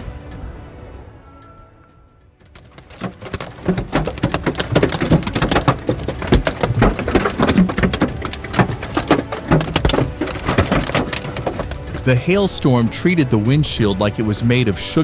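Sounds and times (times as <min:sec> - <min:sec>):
hailstones pelting down: 0:02.5 - 0:12.4.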